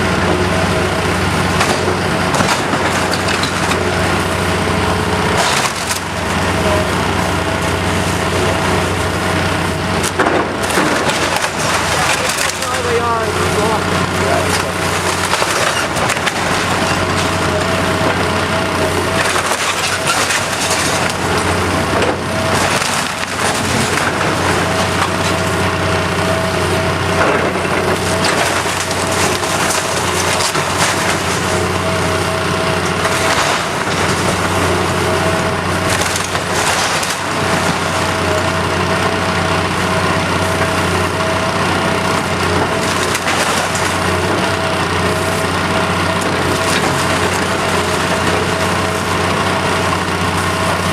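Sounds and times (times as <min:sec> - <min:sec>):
heavy machine engine running: 0:00.0 - 0:50.9
wood splintering and cracking: 0:00.0 - 0:50.9.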